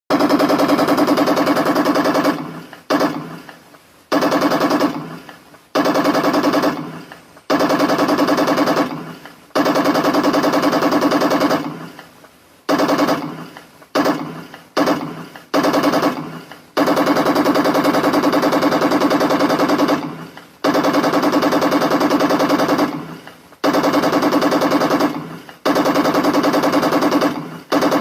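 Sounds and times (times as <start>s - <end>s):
toy machine-gun sound effect: 0.1s - 3.4s, 5.8s - 11.8s, 12.7s - 28.0s.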